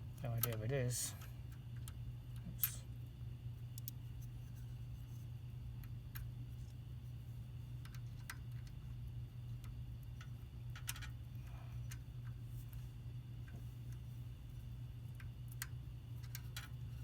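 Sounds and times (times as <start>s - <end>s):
steady low hum: 0.0s - 17.0s
metal parts clicking and tapping: 10.7s - 11.1s, 15.2s - 16.7s.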